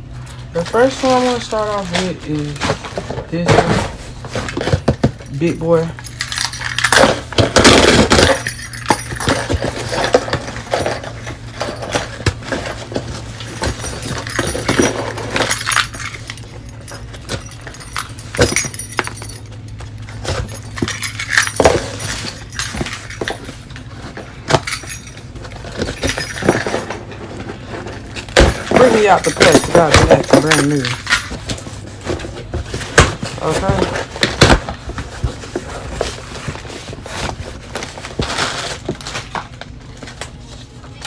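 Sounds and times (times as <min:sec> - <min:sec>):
steady low hum: 0:00.0 - 0:39.2
keys jangling and scraping: 0:00.2 - 0:02.7, 0:03.5 - 0:32.3.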